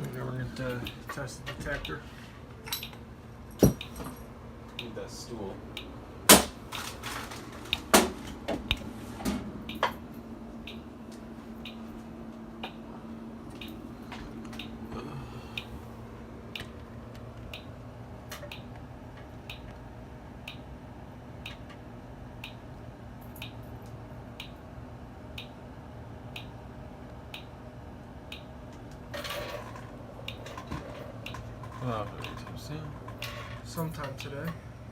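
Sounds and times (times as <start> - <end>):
low steady hum: 0.0 - 34.9
faint regular ticking: 10.6 - 10.9, 11.6 - 11.8, 16.5 - 17.8, 19.4 - 20.7, 28.3 - 28.5.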